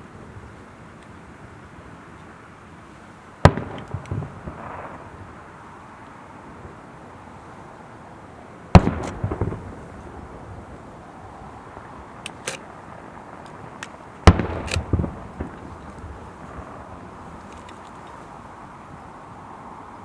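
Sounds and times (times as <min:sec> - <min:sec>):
light firework pops: 0:03.4 - 0:05.0, 0:08.8 - 0:09.8, 0:13.4 - 0:16.8
firework shells bursting: 0:03.5 - 0:05.0, 0:08.8 - 0:10.1, 0:11.7 - 0:18.1.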